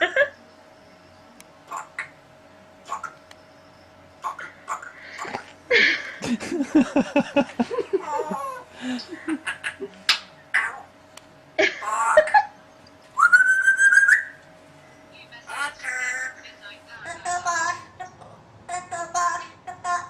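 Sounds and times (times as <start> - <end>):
parrot calls: 1.7 - 2.2, 2.8 - 3.2, 4.2 - 5.4, 8.0 - 10.9, 11.8 - 12.5, 13.2 - 14.4
parrot rising whistle: 13.2 - 14.4.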